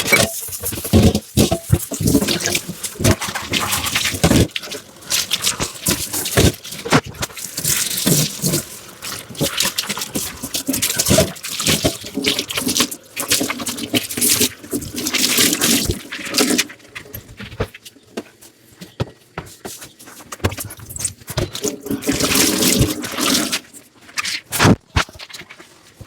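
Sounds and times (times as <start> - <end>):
dishes clinking: 0.0 - 0.7
water running and splashing: 0.1 - 16.8, 21.6 - 23.8.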